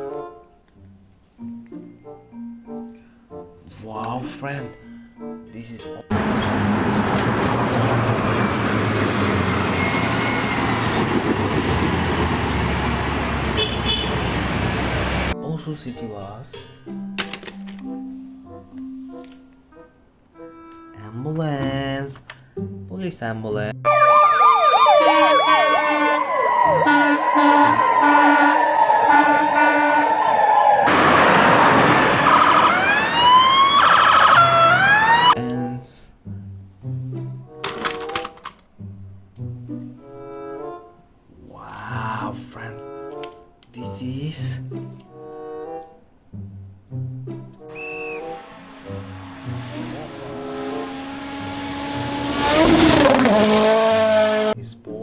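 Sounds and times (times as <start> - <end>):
rising siren wail: 6.1 - 13.6, 23.8 - 35.4, 47.6 - 54.6
large vehicle engine rumbling: 6.1 - 15.4, 46.4 - 54.6
road or rail noise: 6.1 - 15.4, 24.9 - 35.4, 45.0 - 54.6
two-tone siren: 9.0 - 11.0, 23.8 - 35.4, 47.7 - 52.7.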